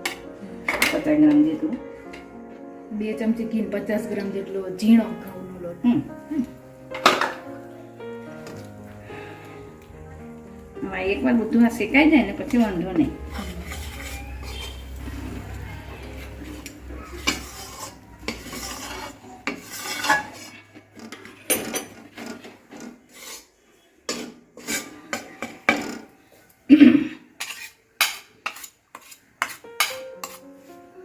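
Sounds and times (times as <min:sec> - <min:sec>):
spatula scraping a pan: 0:12.2 - 0:26.1, 0:27.4 - 0:30.7.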